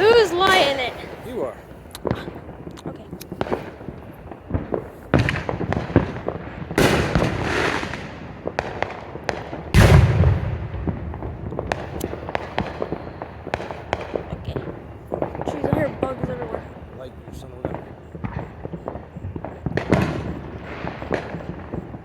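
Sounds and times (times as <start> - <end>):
sharp pops: 0.0 - 8.0, 11.4 - 16.7
deep firework boom: 0.0 - 22.0
firework bang: 0.0 - 22.0
firework crackling burst: 0.0 - 22.0.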